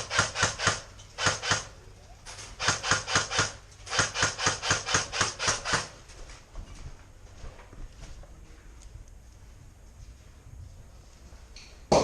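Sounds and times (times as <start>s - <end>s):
airsoft gun rapid shots: 0.0s - 1.8s, 2.6s - 5.9s.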